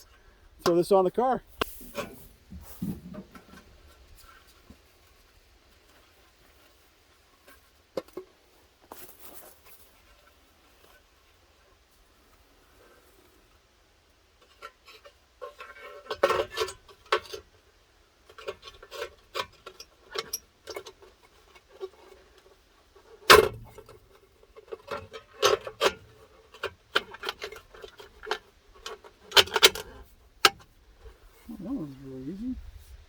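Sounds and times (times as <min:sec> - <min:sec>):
hubcap metal clatter and knocks: 0:23.0 - 0:30.7.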